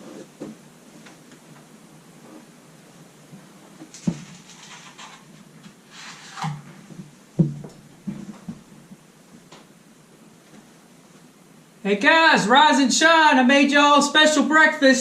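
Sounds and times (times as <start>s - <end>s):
household knocks and clicks: 6.4s - 8.7s.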